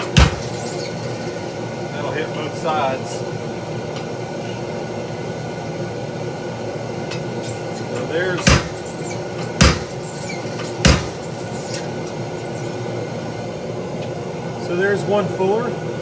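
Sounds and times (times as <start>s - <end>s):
hammer striking hot steel: 0.0s - 1.1s, 7.5s - 12.6s
steady hum: 0.0s - 16.0s.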